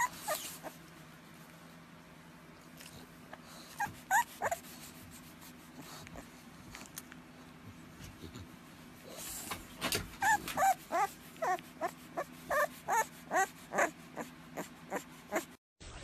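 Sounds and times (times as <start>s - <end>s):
dog whimpering: 0.0s - 0.8s, 3.6s - 4.7s, 10.0s - 15.6s.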